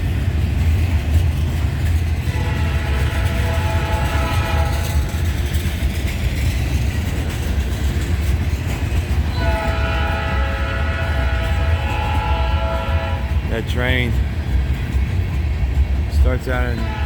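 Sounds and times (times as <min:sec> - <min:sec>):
train rumbling: 0:00.0 - 0:17.0
locomotive horn blast: 0:02.2 - 0:05.1, 0:09.3 - 0:13.4, 0:16.7 - 0:17.0.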